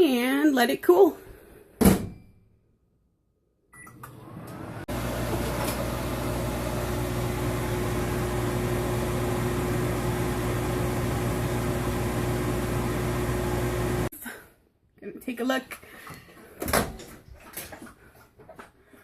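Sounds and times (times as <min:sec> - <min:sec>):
microwave oven humming: 0:03.8 - 0:14.1.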